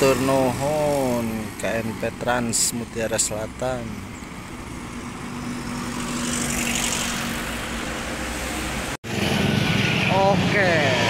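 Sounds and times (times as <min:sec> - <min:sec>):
bus driving past: 0:03.2 - 0:11.0.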